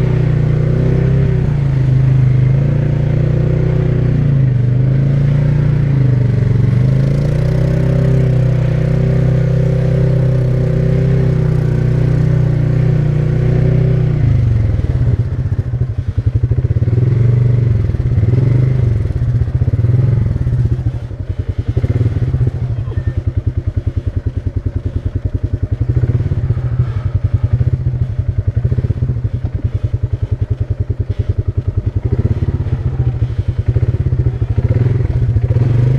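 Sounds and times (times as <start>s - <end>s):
atv engine revving: 0.0s - 35.9s.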